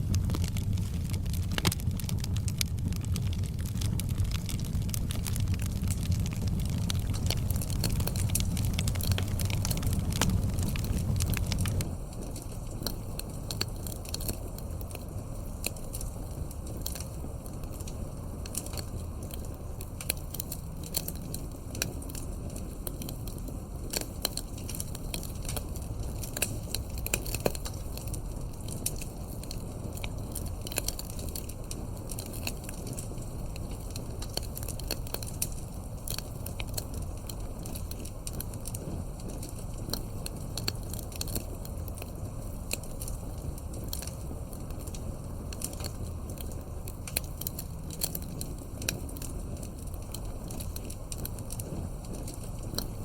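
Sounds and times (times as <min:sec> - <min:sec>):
wood fire crackling: 0:00.0 - 0:53.0.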